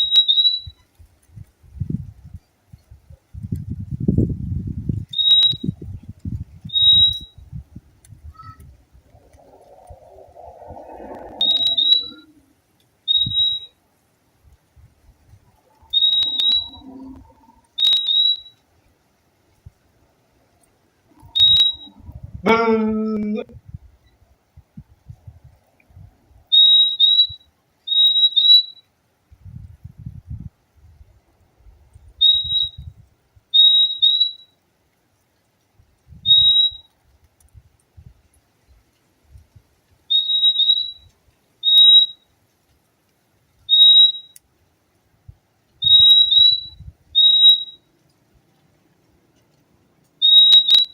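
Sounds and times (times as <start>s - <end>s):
bird whistled calls: 0.0s - 0.9s, 5.1s - 5.8s, 6.7s - 7.4s, 9.2s - 12.4s, 13.1s - 13.7s, 15.6s - 18.6s, 21.2s - 22.1s, 26.5s - 28.8s, 32.2s - 32.9s, 33.6s - 34.5s, 36.2s - 36.9s, 40.1s - 42.2s, 43.7s - 44.4s, 45.8s - 47.9s, 50.2s - 50.9s.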